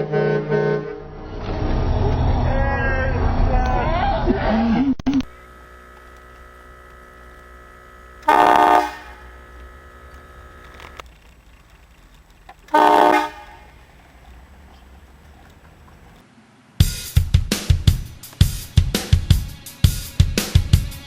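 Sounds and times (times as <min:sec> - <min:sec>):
air horn blasts: 0:06.5 - 0:10.9, 0:12.7 - 0:16.2.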